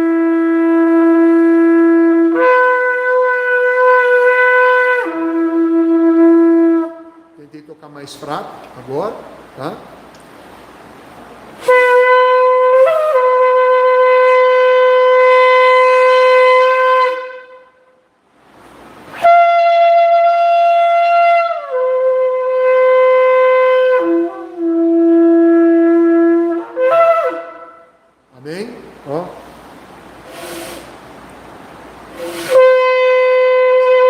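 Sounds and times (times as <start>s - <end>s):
shofar blasts: 0.0s - 7.4s, 11.6s - 18.1s, 19.1s - 28.2s, 32.1s - 34.0s.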